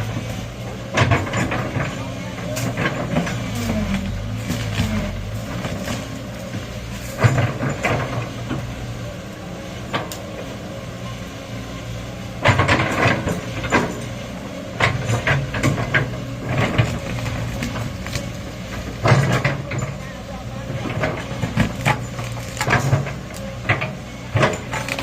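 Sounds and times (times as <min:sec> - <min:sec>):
excavator diesel engine: 0:00.0 - 0:25.0
knocking and clanking: 0:00.9 - 0:05.0.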